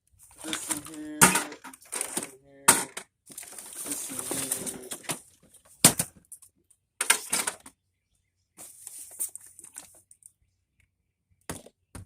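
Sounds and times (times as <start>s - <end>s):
objects knocking into container: 0.4s - 6.3s, 7.0s - 7.7s
soft shuffling and scraping: 3.3s - 5.8s, 8.6s - 10.0s.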